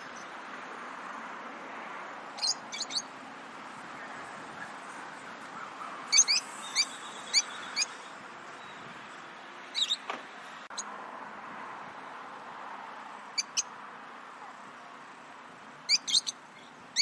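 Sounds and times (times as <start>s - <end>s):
lovebirds chirping: 2.3s - 10.9s, 13.3s - 13.8s, 15.8s - 17.0s.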